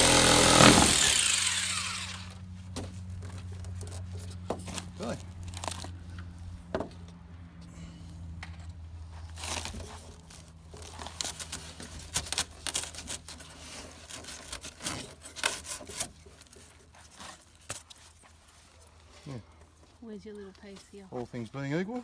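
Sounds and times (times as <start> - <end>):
foam block crunching and tearing: 0.0 - 2.2.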